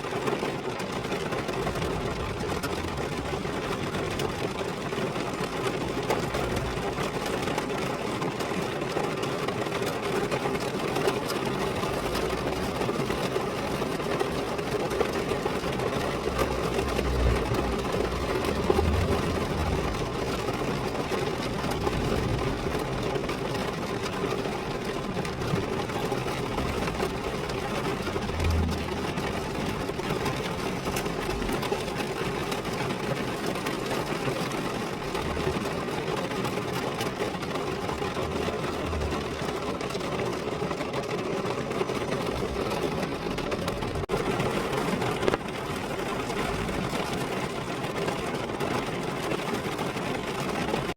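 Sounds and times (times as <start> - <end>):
rain drumming on a car: 0.0 - 50.9.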